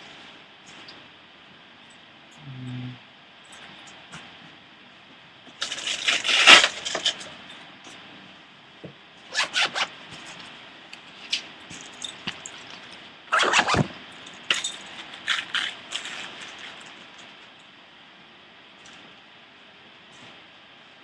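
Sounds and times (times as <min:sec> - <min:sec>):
velcro tearing apart: 0:13.3 - 0:13.9, 0:15.2 - 0:16.8.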